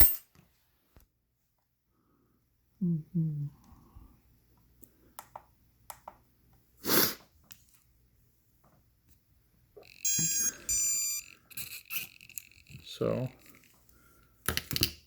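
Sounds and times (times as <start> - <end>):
high-pitched electronic beeps: 0.0 - 0.2, 9.8 - 12.8.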